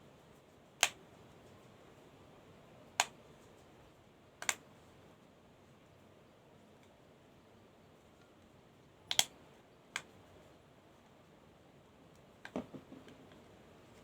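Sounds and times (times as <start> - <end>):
sharp clicks of phone parts: 0.8 - 1.0, 4.4 - 4.6, 9.1 - 9.4.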